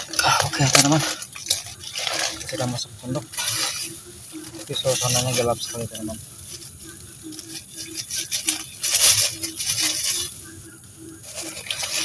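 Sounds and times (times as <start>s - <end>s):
frogs croaking: 0.0s - 12.0s
insects shrilling: 0.0s - 12.0s
loud rustling: 0.0s - 12.0s.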